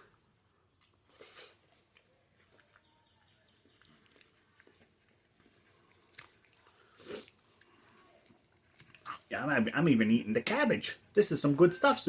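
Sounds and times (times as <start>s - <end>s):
person chewing: 0.7s - 9.3s.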